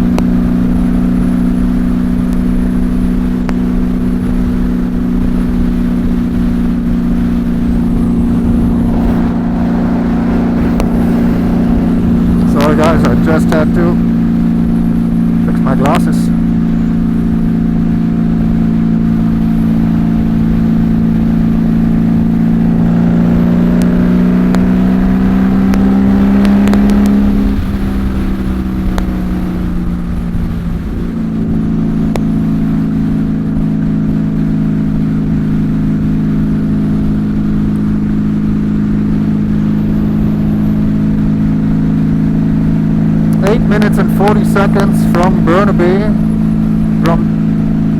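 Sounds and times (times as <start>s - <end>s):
motorcycle engine under load: 0.0s - 47.9s
wind rush: 0.2s - 33.8s.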